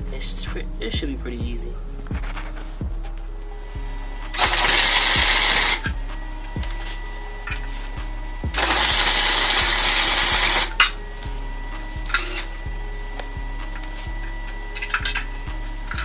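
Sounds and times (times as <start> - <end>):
background music with steady beat: 0.0 - 16.0
welding arc crackling: 2.0 - 16.0.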